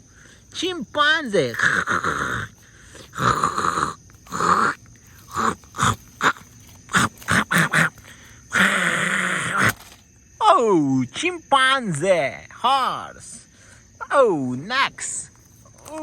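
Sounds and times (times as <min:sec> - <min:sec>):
chimpanzee grunts and pants: 0:01.3 - 0:09.0.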